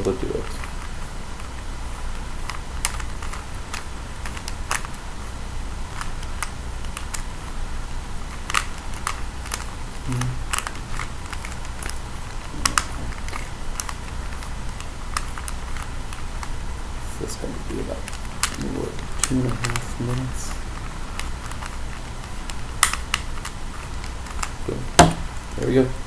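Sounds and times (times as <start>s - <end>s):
puzzle cube plastic layers clicking: 0.0s - 25.8s.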